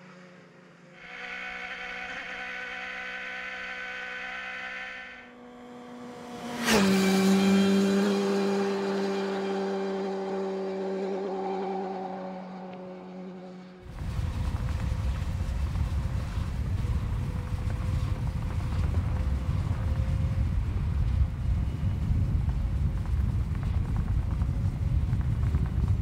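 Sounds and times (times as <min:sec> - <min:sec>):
motorcycle engine: 0:00.0 - 0:26.0
rough low rumble: 0:13.8 - 0:26.0.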